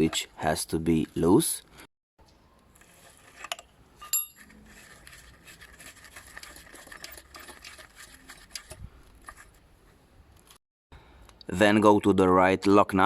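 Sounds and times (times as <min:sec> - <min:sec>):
tool ticking and scraping: 0:02.7 - 0:09.7
metal spanner clinking: 0:03.4 - 0:04.5.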